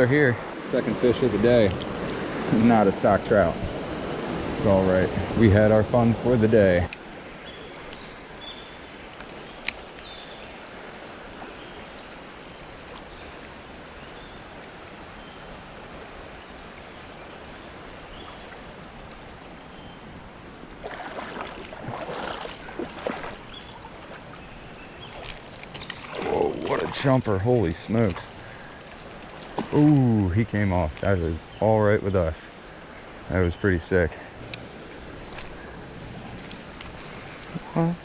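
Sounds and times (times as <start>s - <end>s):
creek water running: 0.0s - 38.0s
high bird chirps: 28.4s - 29.1s.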